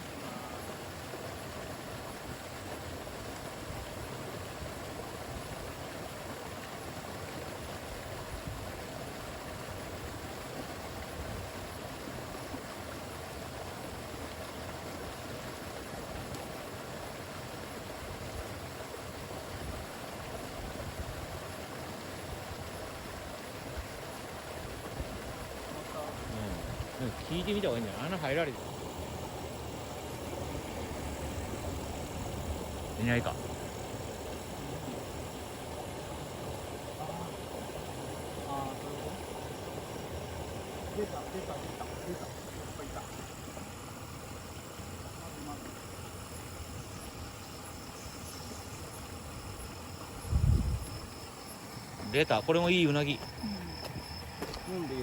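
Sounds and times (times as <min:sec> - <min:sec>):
river running high: 0:00.0 - 0:55.0
rain falling: 0:24.7 - 0:45.7.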